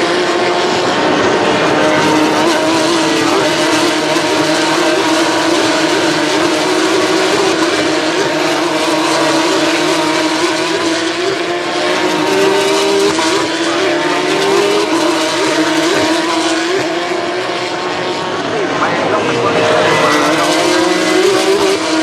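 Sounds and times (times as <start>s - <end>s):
race car engines at high revs: 0.0s - 22.0s.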